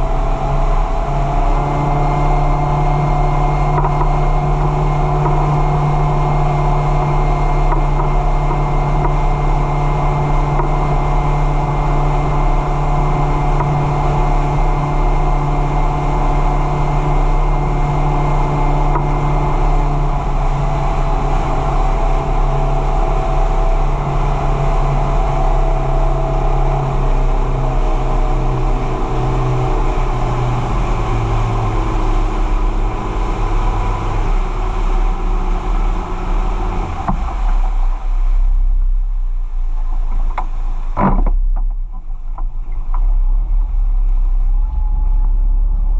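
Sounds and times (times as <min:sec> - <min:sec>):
small boat engine running: 0:00.0 - 0:45.9.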